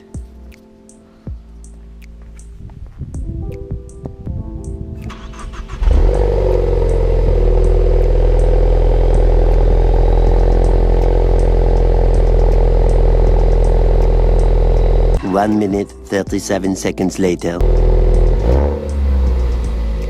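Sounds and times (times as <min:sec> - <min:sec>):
background music: 0:00.0 - 0:20.0
car engine starting and idling: 0:05.1 - 0:15.2, 0:17.6 - 0:20.0.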